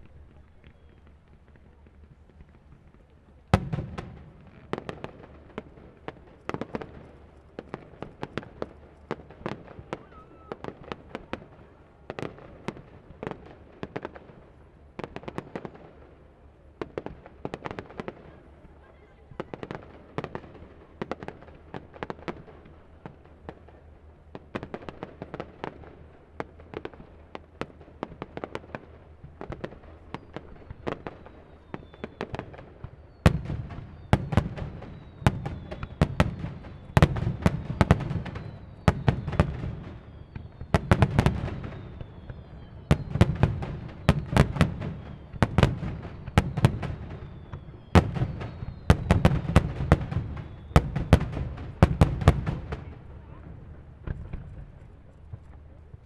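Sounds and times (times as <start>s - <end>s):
deep fireworks booms: 0.0s - 7.0s, 19.5s - 56.0s
fireworks bangs and pops: 0.0s - 16.2s, 16.8s - 56.0s
falling firework whistles: 9.8s - 10.8s, 30.0s - 52.9s.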